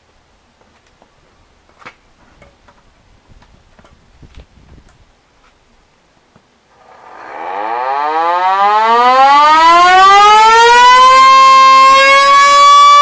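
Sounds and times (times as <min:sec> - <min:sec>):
wind rumble on microphone: 0:02.4 - 0:05.2.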